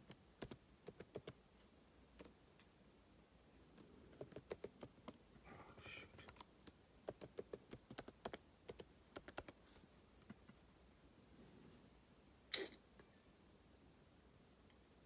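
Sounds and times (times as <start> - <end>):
laptop keyboard typing: 0.0 - 1.4, 3.8 - 5.2, 5.8 - 9.6
soft rustle: 9.5 - 10.0.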